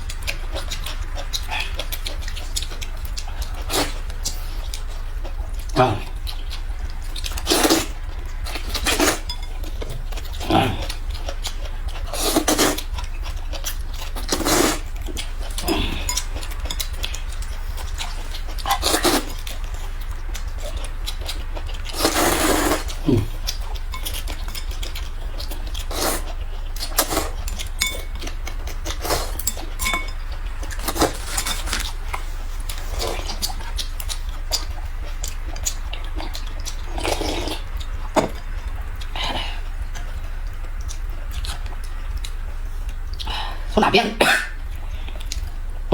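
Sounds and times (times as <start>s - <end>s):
steady low hum: 0.0s - 45.9s
slurping: 5.6s - 24.8s, 25.4s - 40.2s.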